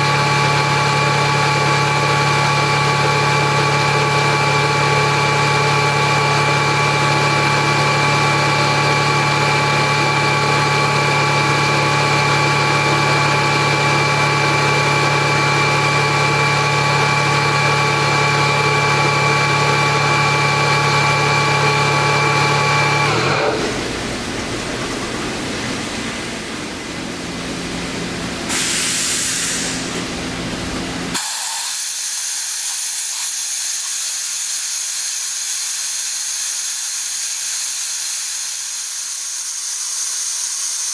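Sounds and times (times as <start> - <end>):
air compressor humming: 18.8 - 40.9
hiss of escaping air: 28.5 - 30.0, 31.2 - 40.9.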